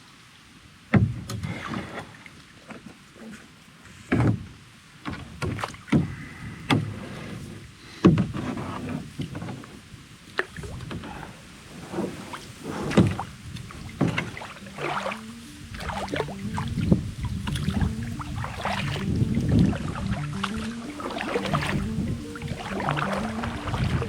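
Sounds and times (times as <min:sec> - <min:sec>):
knocks against kayak hull: 0:04.1 - 0:07.0.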